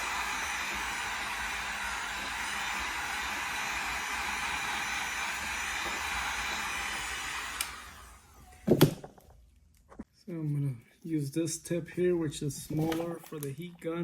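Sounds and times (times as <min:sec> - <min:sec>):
heat gun blowing: 0:00.0 - 0:08.9.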